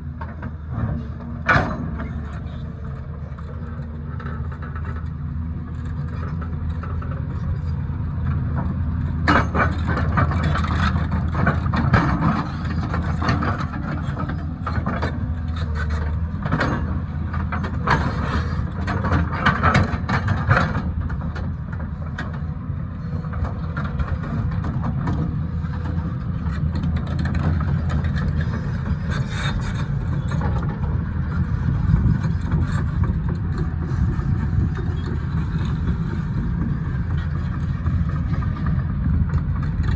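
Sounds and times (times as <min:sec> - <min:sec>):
excavator diesel engine running: 0:00.0 - 0:39.9
knocks and scrapes on rock: 0:27.4 - 0:38.6.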